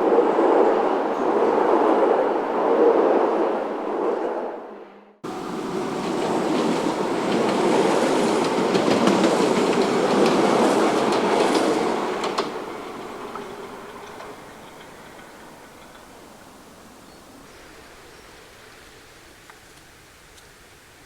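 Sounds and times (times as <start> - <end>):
train passing: 0.0 - 19.3
train wheels clicking over rail joints: 5.2 - 17.0.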